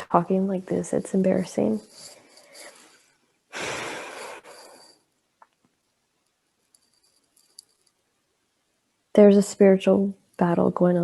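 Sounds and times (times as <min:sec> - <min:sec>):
person sighing: 0:03.5 - 0:05.0.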